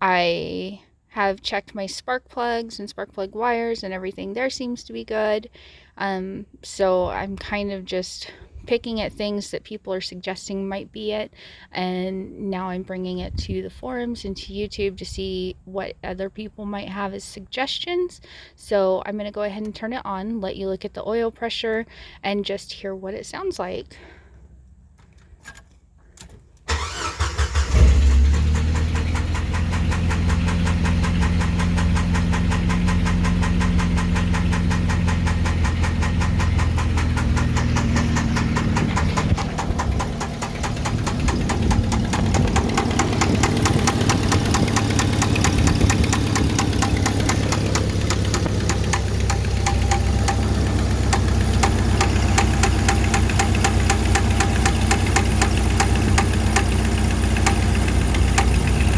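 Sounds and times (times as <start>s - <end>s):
car engine starting and idling: 24.3s - 58.9s
engine ticking knock: 28.1s - 58.9s.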